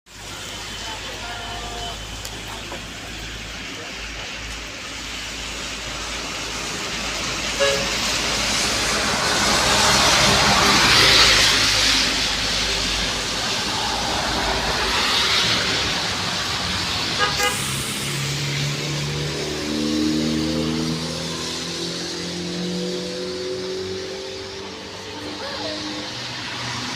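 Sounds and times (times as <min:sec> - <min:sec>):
large vehicle road noise: 0:00.1 - 0:26.9
vehicle horn toot: 0:07.6 - 0:08.0, 0:17.2 - 0:17.7.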